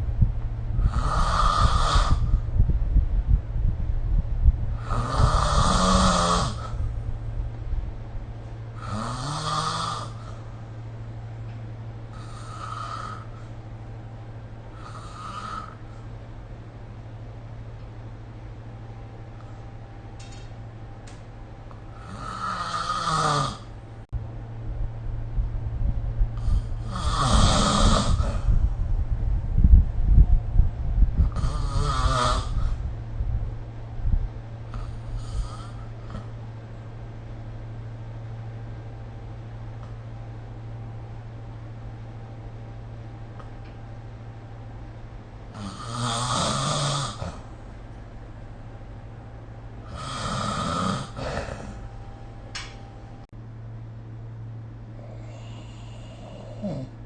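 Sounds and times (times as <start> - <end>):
low rumble: 0.0 - 8.9, 24.0 - 27.0, 28.0 - 45.5
steady low hum: 0.0 - 57.0
person snoring: 0.8 - 2.4, 4.8 - 6.8, 8.8 - 10.4, 12.1 - 13.5, 14.7 - 16.0, 21.9 - 23.7, 26.4 - 28.6, 31.2 - 32.8, 34.7 - 36.3, 45.5 - 47.5, 49.8 - 51.9, 55.0 - 57.0.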